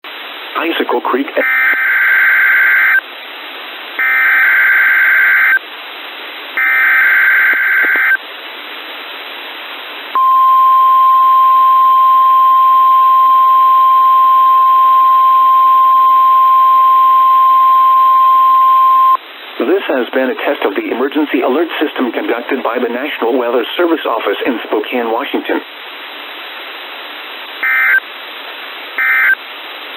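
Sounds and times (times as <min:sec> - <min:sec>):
radio static hiss: 0:00.1 - 0:29.9
digital data tone bursts: 0:04.0 - 0:05.6, 0:27.6 - 0:28.0, 0:29.0 - 0:29.4.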